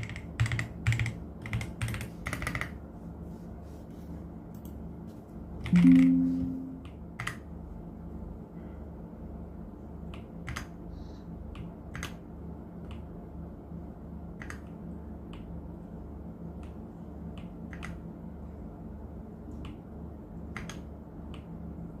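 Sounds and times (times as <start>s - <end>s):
keyboard keystrokes: 5.6s - 7.4s
low hum: 5.7s - 7.2s.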